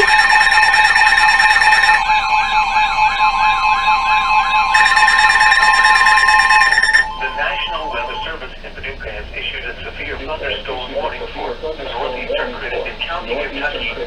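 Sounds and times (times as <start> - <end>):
steady high alert tones: 0.0 - 8.4
fast siren-like warble: 0.0 - 8.6.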